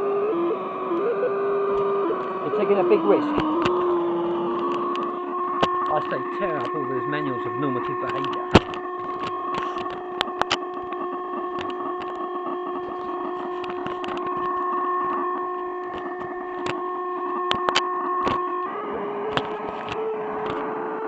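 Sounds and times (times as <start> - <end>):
electronic feedback drone: 0.0 - 21.0
sharp clicks and crackles: 3.2 - 4.0, 4.6 - 18.6, 19.2 - 20.7.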